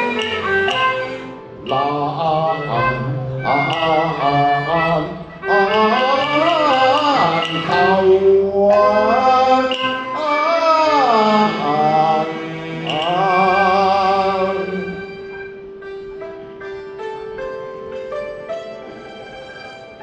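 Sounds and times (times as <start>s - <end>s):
opera singing with sliding pitch: 0.0s - 15.3s
traditional instrumental accompaniment: 0.0s - 20.0s.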